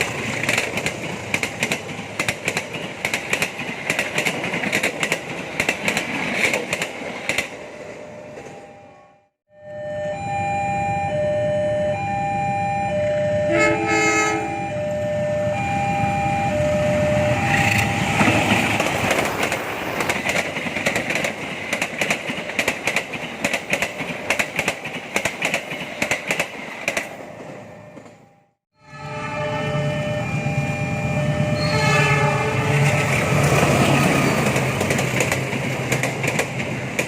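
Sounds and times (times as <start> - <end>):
train wheels clacking on rails: 0.0 - 7.6, 17.5 - 28.2, 32.8 - 37.0
two-tone level-crossing alarm: 8.0 - 18.5, 27.8 - 32.3
train horn: 13.4 - 15.0, 28.8 - 33.1.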